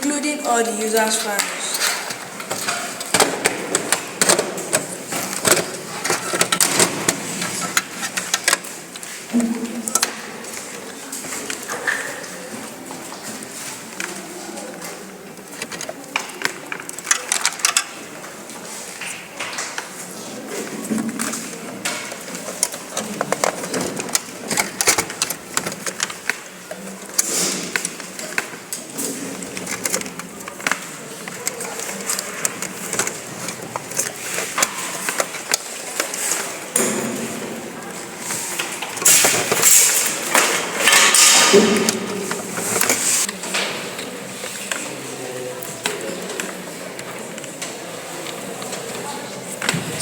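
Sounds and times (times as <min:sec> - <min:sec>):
computer parts clicking and clattering: 0:01.0 - 0:09.1, 0:15.4 - 0:18.1, 0:20.6 - 0:37.5, 0:38.2 - 0:44.8.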